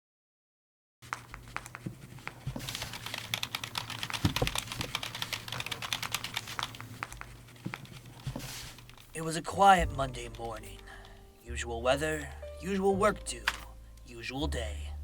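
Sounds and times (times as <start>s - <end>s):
typing on computer keyboard: 2.4s - 8.2s.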